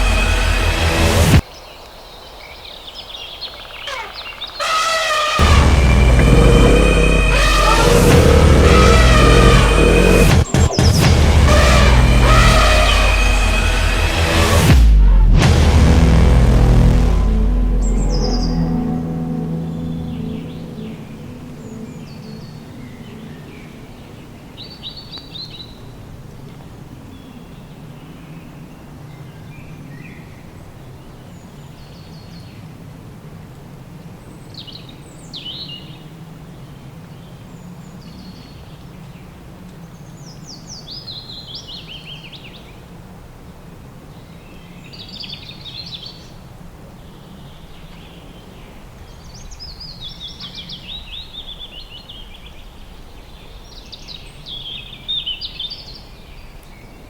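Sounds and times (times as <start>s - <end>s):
birds chirping: 1.5s - 14.0s
low steady hum: 11.2s - 24.3s.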